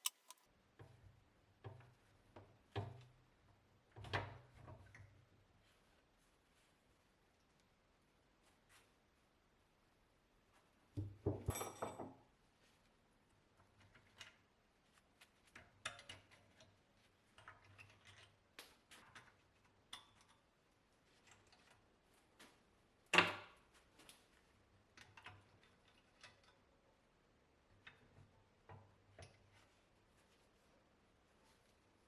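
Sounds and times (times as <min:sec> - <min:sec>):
tools clicking and clinking: 0:00.0 - 0:00.4.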